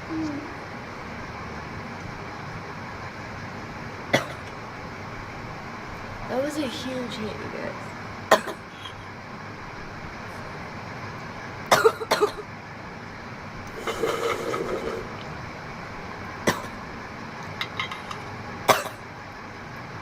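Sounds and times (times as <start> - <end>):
steady background hum: 0.0 - 20.0
woman coughing: 8.3 - 9.0, 11.7 - 12.4.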